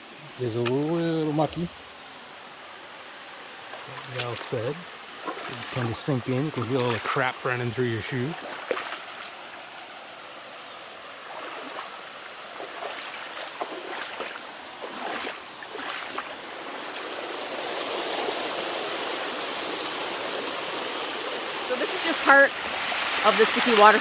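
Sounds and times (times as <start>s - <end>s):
water splashes: 0.3s - 2.2s, 3.4s - 24.0s
water rushing over rocks: 0.4s - 24.0s.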